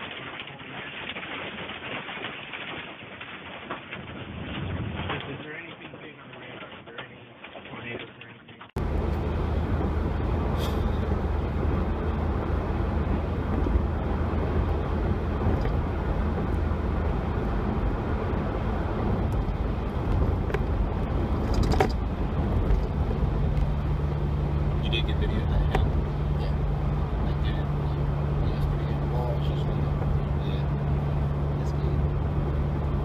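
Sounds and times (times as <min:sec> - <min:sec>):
car engine and road noise: 0:08.7 - 0:33.0.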